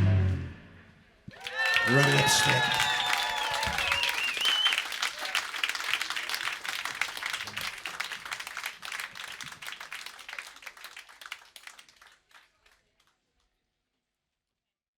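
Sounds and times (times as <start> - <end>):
audience applause: 1.3 - 12.8.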